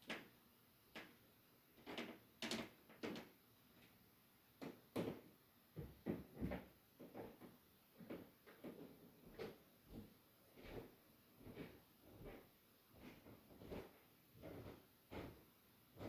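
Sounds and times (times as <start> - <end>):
faint knocks and scrapes: 4.6 - 16.0.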